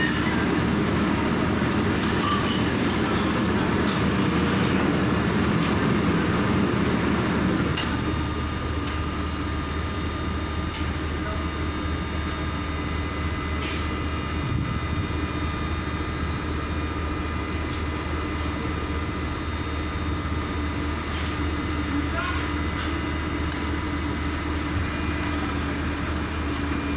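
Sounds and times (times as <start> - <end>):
machinery humming: 0.0 - 26.9.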